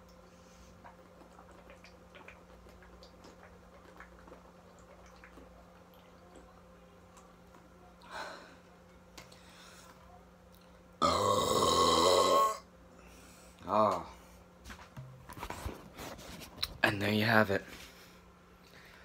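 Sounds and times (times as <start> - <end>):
soda clicks and wet ticks: 0.0 - 8.1.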